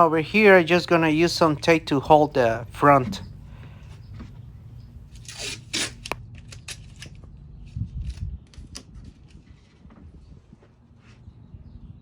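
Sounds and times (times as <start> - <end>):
tape ripping off roll: 5.2 - 7.2.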